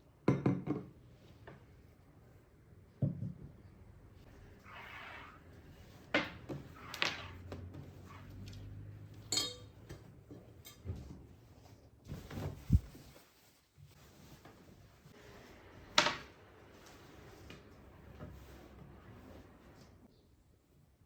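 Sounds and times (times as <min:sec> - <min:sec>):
kitchen knocks and clicks: 0:00.3 - 0:00.9
ringing clink: 0:09.3 - 0:09.7.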